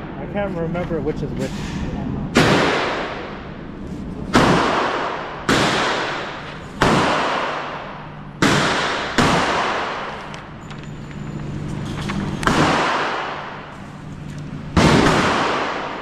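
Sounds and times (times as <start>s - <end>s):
gunshots with echo: 2.3s - 3.5s, 4.3s - 10.3s, 12.4s - 13.8s, 14.7s - 16.0s.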